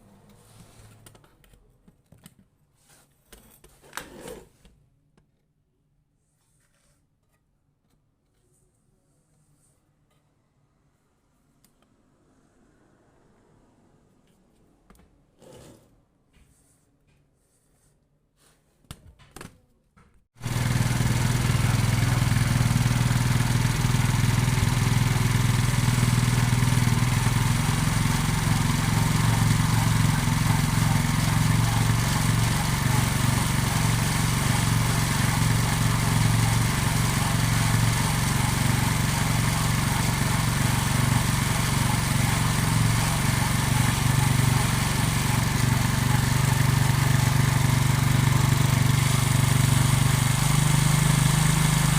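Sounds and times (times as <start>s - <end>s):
motorcycle engine running: 20.4s - 51.9s.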